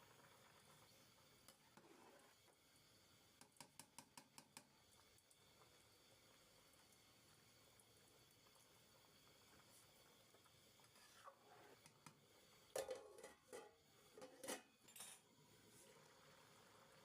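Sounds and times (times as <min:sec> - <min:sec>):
utensils clinking on cookware: 0:12.7 - 0:15.3.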